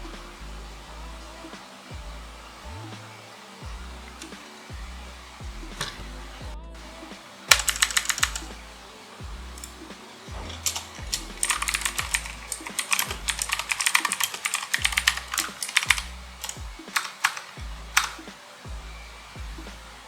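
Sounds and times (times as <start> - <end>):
background music with bass line: 0.0 - 20.0
mechanical keyboard typing: 7.5 - 8.5, 10.4 - 18.3.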